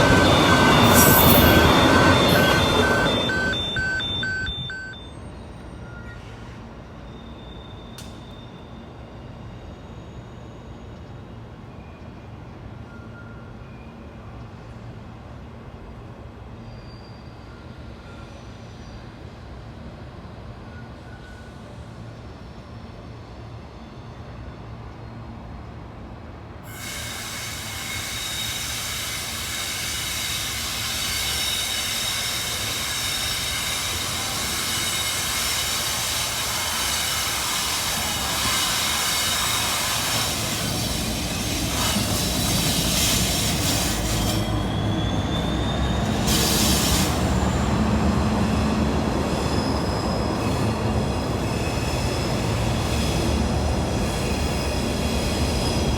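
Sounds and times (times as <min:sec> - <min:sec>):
train rumble: 0:00.0 - 0:07.0, 0:24.7 - 0:55.9
train wheels squealing: 0:00.0 - 0:25.7, 0:26.6 - 0:55.9.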